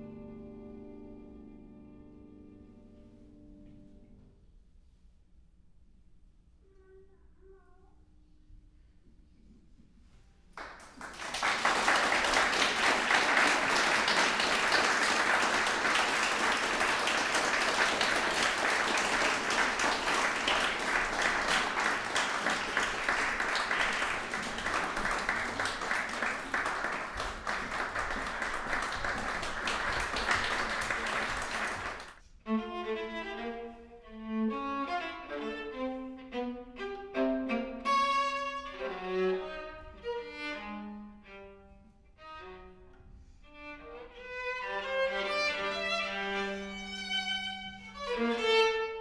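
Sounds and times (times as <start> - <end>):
audience applauding: 10.6 - 32.2
viola playing: 32.5 - 42.8.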